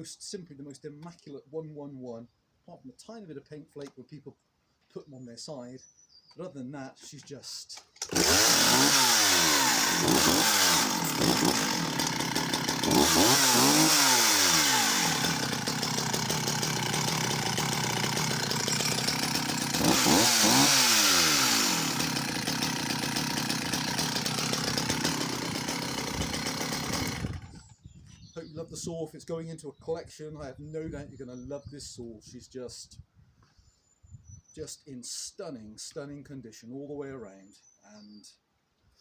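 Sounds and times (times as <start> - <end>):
chainsaw revving and idling: 8.0 - 27.7.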